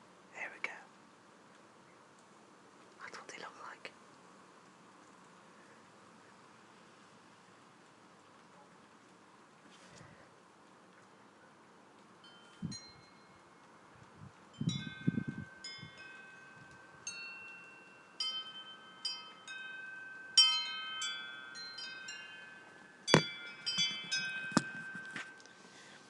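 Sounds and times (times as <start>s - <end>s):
metal wind chimes ringing: 12.2s - 13.6s, 14.5s - 26.0s
sharp knocks: 23.1s - 24.7s.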